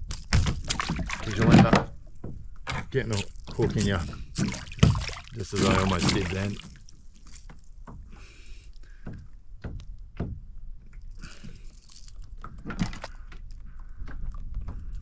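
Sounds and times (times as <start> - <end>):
light water splashing: 0.0 - 8.0
knocks and taps: 8.9 - 10.5.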